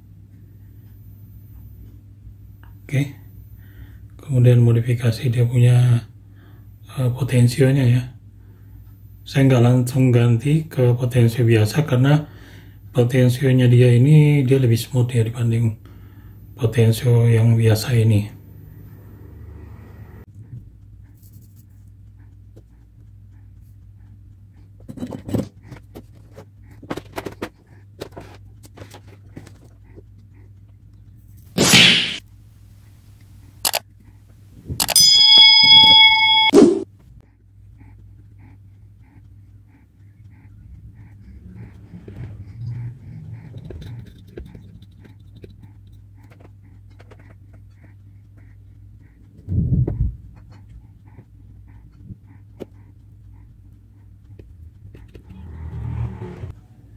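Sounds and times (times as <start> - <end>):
steady low hum: 0.0 - 56.9
soft regular pulses: 32.3 - 56.9
small parts and tools clicking: 33.6 - 33.8, 34.8 - 35.8.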